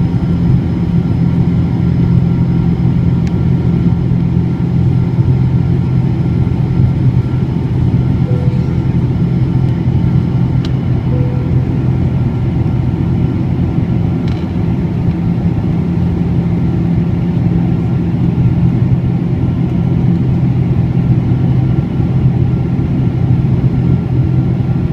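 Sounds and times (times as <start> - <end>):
jet engines rumbling: 3.8 - 18.6.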